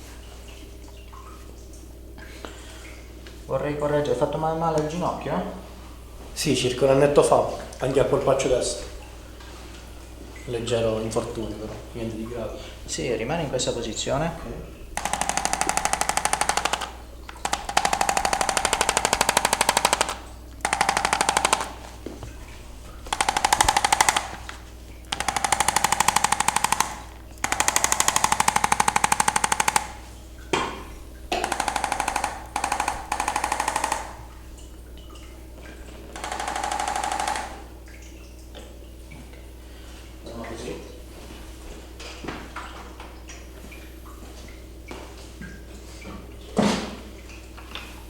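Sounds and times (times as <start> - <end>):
electric massager pulsing: 15.0 - 22.2, 23.1 - 30.2, 31.3 - 34.3, 36.2 - 37.7.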